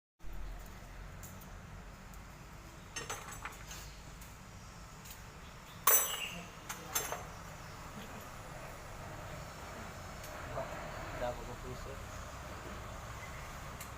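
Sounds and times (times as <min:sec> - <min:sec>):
low steady background noise: 0:00.2 - 0:13.9
metallic clinks and knocks: 0:03.0 - 0:03.8, 0:05.8 - 0:07.3.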